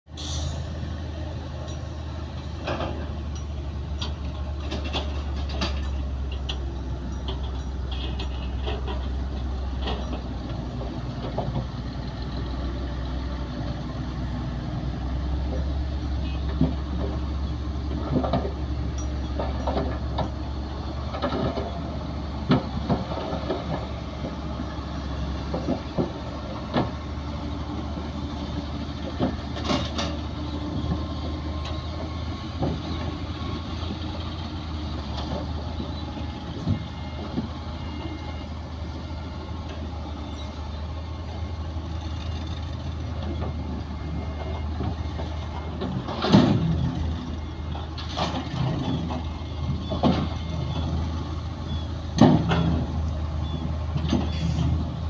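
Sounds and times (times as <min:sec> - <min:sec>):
diesel engine drone: 0:00.0 - 0:55.0
tracks and blade clanking: 0:01.6 - 0:12.9.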